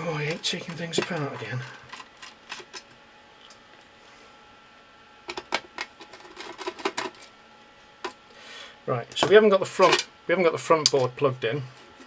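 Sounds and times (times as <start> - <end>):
clicks and taps of parts: 5.3 - 7.2.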